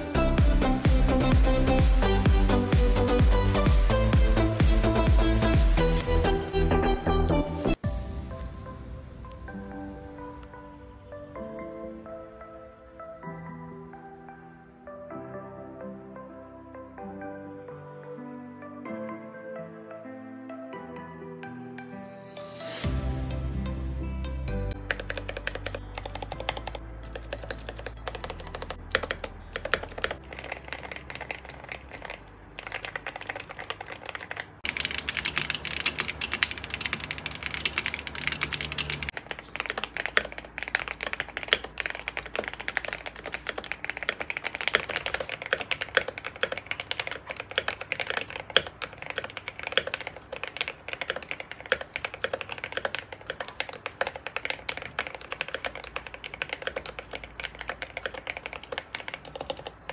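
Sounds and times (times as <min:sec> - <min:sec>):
mechanical keyboard typing: 0:24.7 - 0:59.9.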